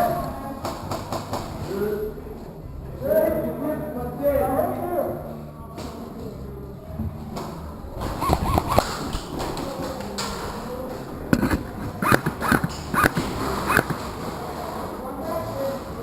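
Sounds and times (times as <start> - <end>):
airsoft gunshots: 8.0 - 9.6, 11.3 - 14.2.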